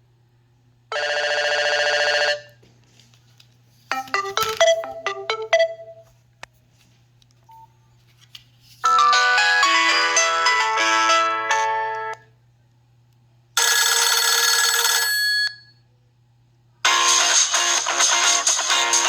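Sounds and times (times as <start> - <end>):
buzzy phone tone: 3.9 - 6.1
polyphonic ringtone tune: 3.9 - 6.1, 8.8 - 12.2
ringtone melody: 3.9 - 6.1, 8.8 - 12.2.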